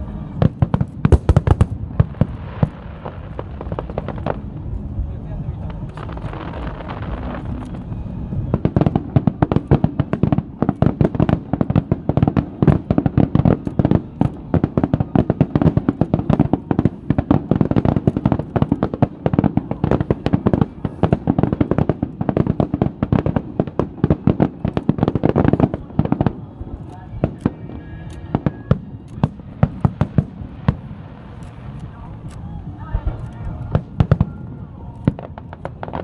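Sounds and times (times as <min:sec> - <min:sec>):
low rumble: 0:00.0 - 0:22.3
rapid firework bangs: 0:00.4 - 0:04.5, 0:08.5 - 0:31.4.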